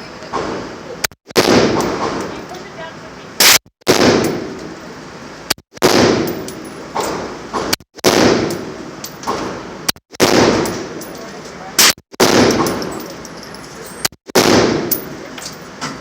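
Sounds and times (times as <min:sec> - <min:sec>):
rifle shots echoing: 0:05.8 - 0:06.6, 0:12.2 - 0:13.0, 0:14.4 - 0:15.2.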